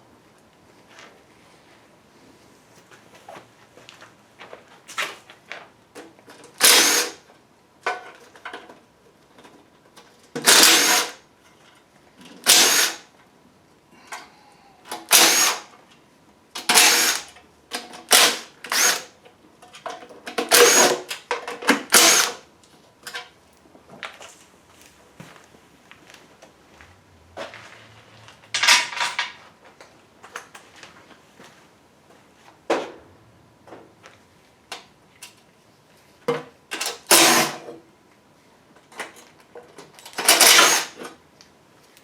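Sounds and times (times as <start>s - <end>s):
power tool bursts: 6.6s - 7.2s, 10.4s - 11.2s, 12.4s - 13.1s, 14.9s - 15.7s, 16.6s - 17.3s, 18.1s - 19.1s, 20.5s - 21.1s, 21.8s - 22.4s, 37.0s - 37.6s, 40.3s - 41.0s.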